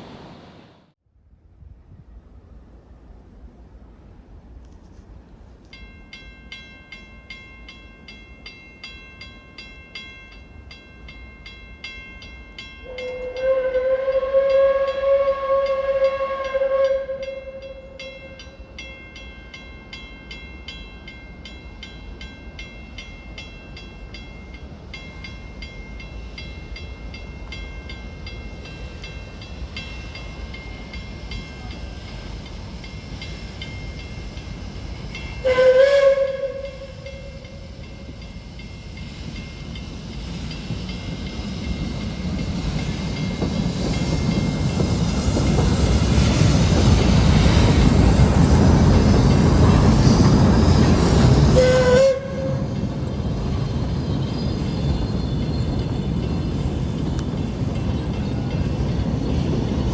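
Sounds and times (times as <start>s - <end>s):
steam locomotive whistle: 12.8s - 18.6s, 35.2s - 38.1s, 49.1s - 52.9s.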